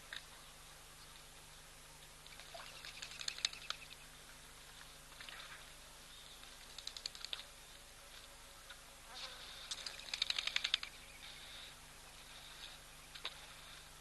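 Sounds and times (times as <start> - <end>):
animal rattling trill of clicks: 2.3 - 4.0, 6.6 - 7.5, 9.6 - 11.1.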